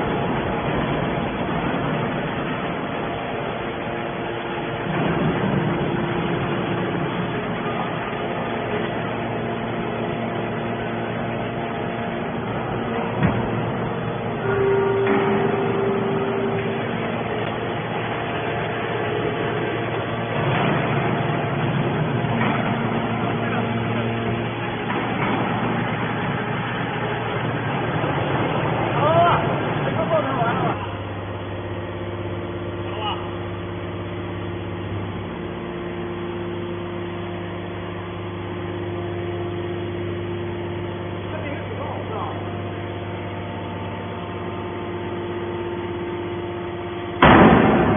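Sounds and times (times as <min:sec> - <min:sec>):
petrol engine running: 0:00.0 - 0:31.8.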